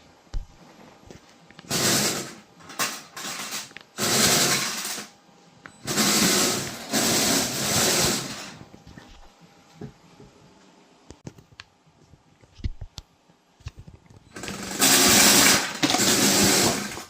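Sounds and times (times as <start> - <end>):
toy electric motors whirring: 1.7 - 5.1, 5.8 - 8.6, 14.4 - 17.0.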